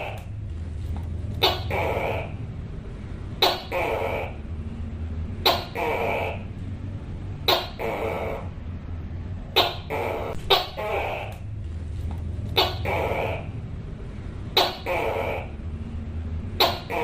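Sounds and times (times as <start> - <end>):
gecko calling: 0.0 - 0.4, 1.4 - 2.5, 3.4 - 4.6, 5.4 - 6.6, 7.4 - 8.6, 9.5 - 11.6, 12.4 - 13.6, 14.5 - 15.6, 16.6 - 17.0
low hum: 0.0 - 17.0.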